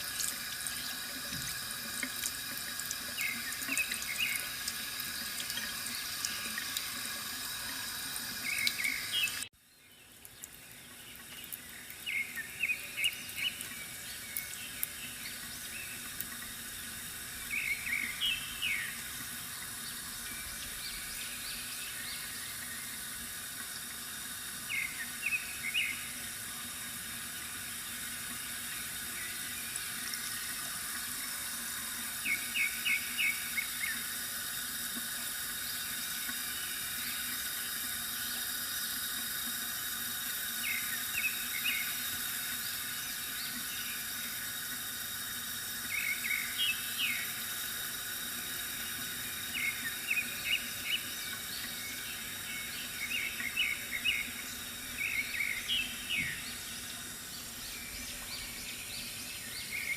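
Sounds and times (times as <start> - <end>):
water trickling from fountain: 0.0 - 59.9
bird chirping: 3.2 - 4.5, 17.4 - 19.0, 49.5 - 56.7.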